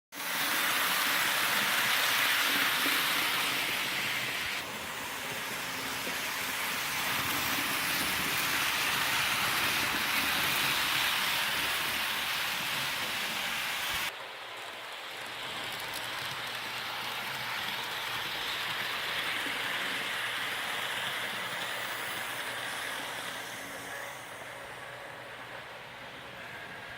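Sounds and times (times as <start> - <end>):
model train whirring on rails: 0.2 - 26.9.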